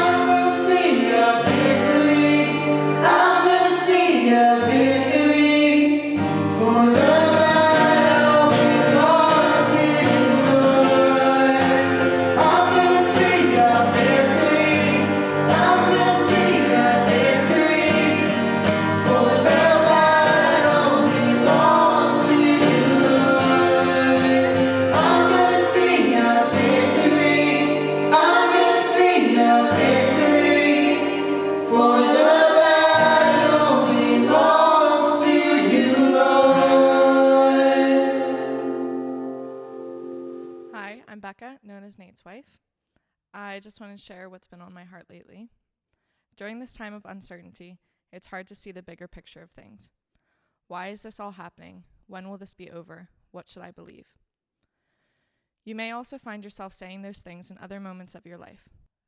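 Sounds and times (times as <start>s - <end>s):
worship music with singers and band: 0.0s - 40.6s.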